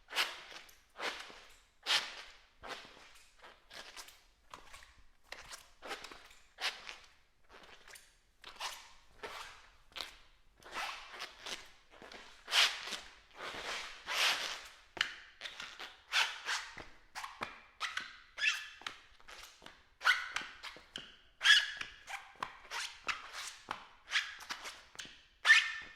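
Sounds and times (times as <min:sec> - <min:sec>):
squeaking footsteps on hard floor: 0:15.4 - 0:25.9.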